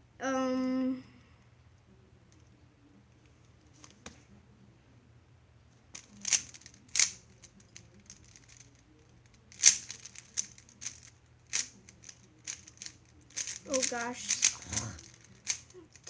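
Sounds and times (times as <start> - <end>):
speed cube clicking and clacking: 6.0 - 16.0
speed cube snaps: 9.6 - 15.7.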